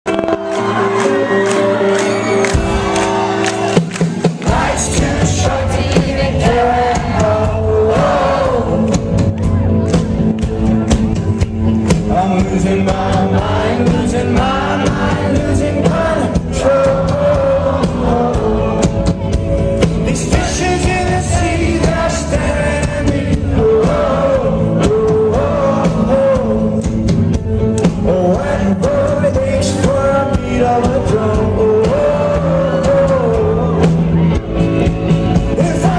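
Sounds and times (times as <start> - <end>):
rock band playing live: 0.1 - 35.9
man singing: 4.4 - 9.4, 11.8 - 34.5, 35.3 - 35.9.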